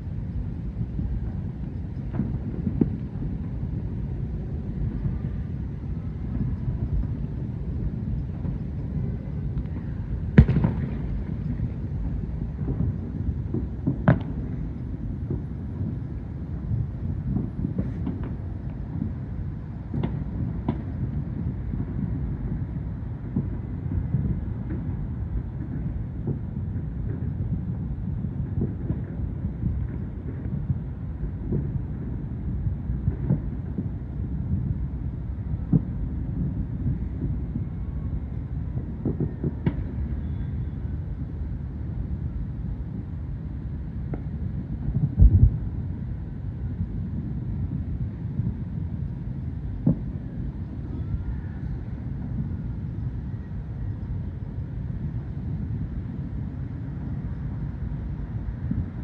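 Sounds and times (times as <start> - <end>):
distant fireworks rumble: 0.0 - 59.0
sharp firework cracks: 9.7 - 11.5
loud firework bang: 9.8 - 11.7.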